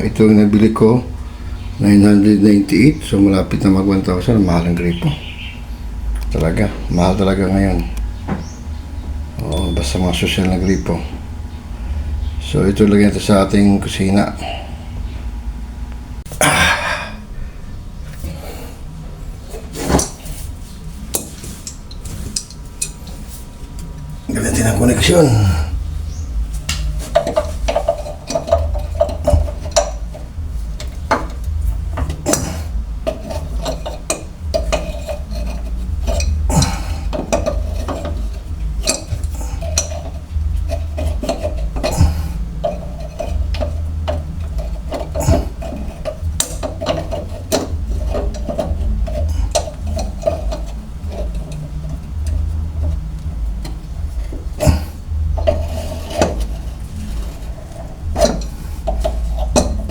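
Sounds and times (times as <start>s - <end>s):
steady low hum: 0.0s - 59.9s
metal faucet parts clinking: 32.0s - 42.0s, 42.6s - 53.0s, 55.4s - 59.9s.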